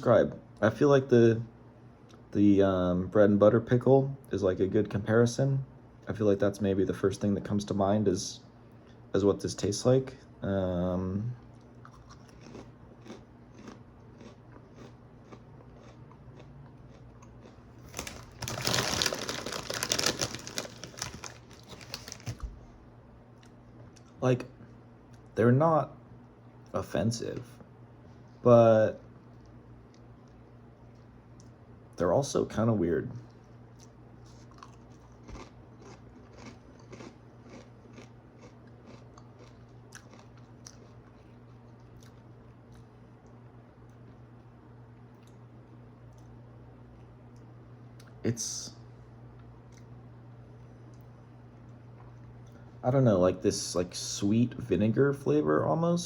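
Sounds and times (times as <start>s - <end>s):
rice crisps being chewed: 11.4s - 22.5s, 33.2s - 48.2s
snack bag crinkling: 11.8s - 22.6s, 34.3s - 42.2s.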